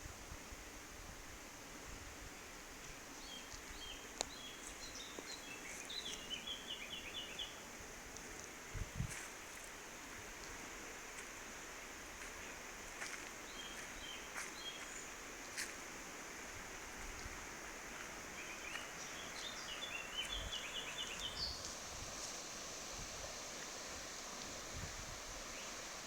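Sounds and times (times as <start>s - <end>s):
small birds chirping: 3.2s - 7.6s, 13.4s - 15.6s, 18.2s - 21.8s.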